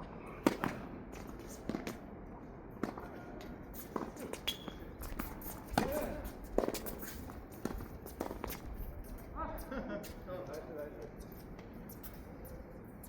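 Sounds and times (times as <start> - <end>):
tennis ball strike: 0.4 - 0.8, 4.0 - 6.0
shoes scuffing on court: 2.8 - 9.3
shoe squeak: 4.2 - 6.1, 11.1 - 13.0.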